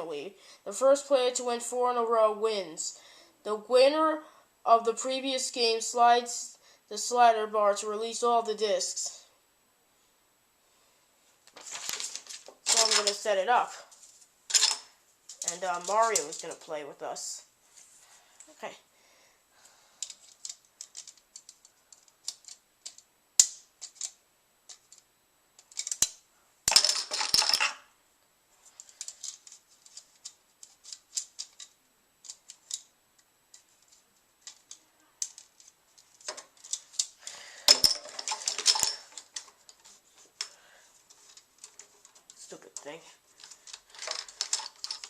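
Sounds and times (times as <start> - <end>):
plastic parts clicking and clattering: 11.6 - 13.3, 14.5 - 16.6, 20.0 - 27.8, 28.8 - 45.0
plastic parts rattling: 11.6 - 13.3, 14.5 - 16.6, 20.0 - 25.0, 25.6 - 27.8, 28.8 - 32.9, 33.5 - 45.0.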